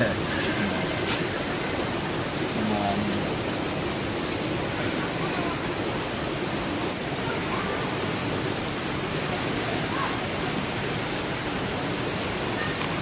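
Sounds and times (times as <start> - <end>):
waterfall roaring: 0.0 - 13.0
faint distant voices: 4.4 - 13.0.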